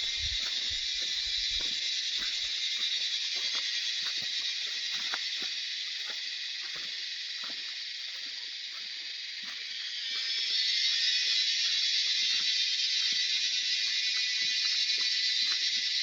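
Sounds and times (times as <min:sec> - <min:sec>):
high-pitched insect chorus: 0:00.0 - 0:16.0.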